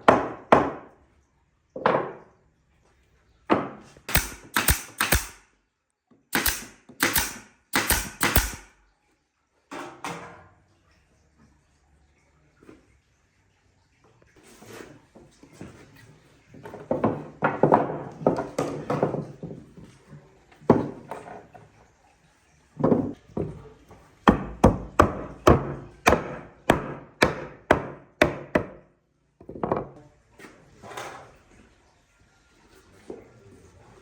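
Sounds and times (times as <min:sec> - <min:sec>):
tool striking wood: 0:04.1 - 0:05.4, 0:06.3 - 0:08.8, 0:24.3 - 0:28.8.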